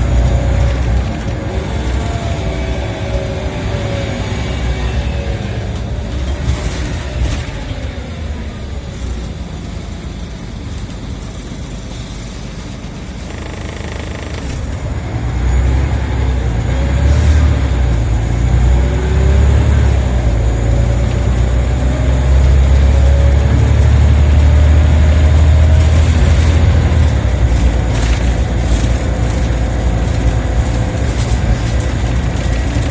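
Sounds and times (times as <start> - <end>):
bus engine droning: 0.0 - 32.9
faint rising whine: 1.5 - 10.4.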